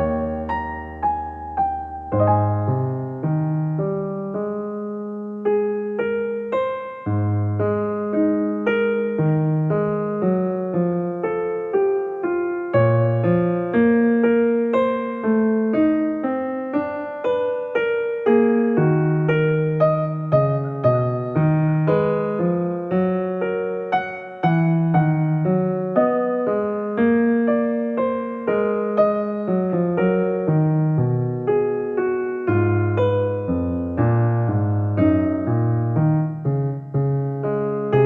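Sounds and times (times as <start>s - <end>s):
electric piano playing: 0.0s - 38.0s.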